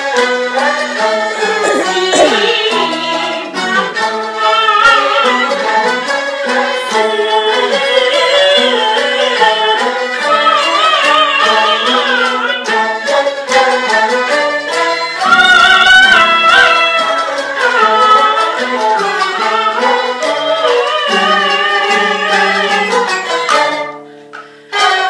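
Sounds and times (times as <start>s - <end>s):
bowed fiddle melody with vibrato: 0.0s - 25.0s.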